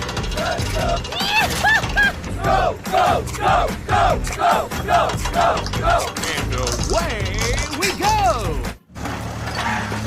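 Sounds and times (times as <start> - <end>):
background music with low bass: 0.0 - 8.9
high-pitched cartoon voices chanting: 0.3 - 1.4, 2.4 - 6.1.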